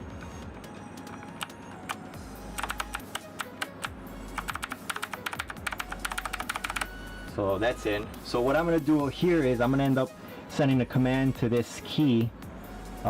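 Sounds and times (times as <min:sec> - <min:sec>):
mechanical keyboard clicking: 0:01.0 - 0:06.9.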